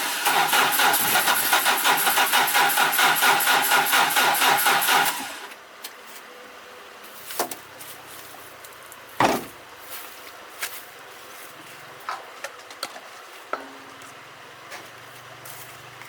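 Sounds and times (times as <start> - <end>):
truck engine running: 0.0 - 5.5.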